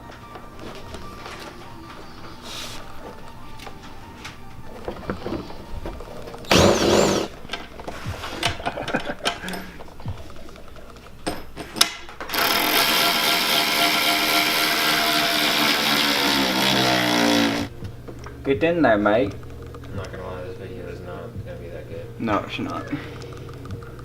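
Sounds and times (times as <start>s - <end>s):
power tool motor running: 6.5s - 7.3s, 12.3s - 17.7s
clicks and knocks of handled parts: 7.5s - 12.4s.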